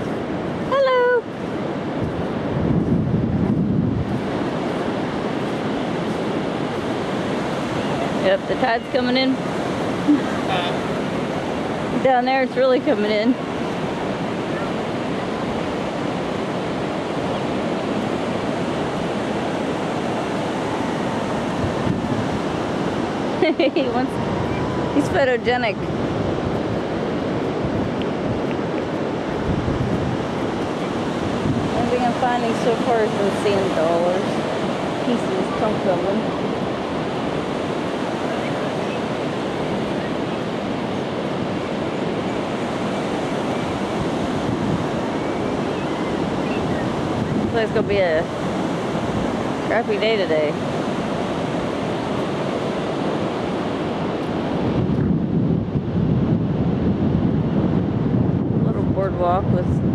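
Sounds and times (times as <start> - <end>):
ocean surf rushing: 0.0 - 59.9
wind buffeting microphone: 0.0 - 59.9.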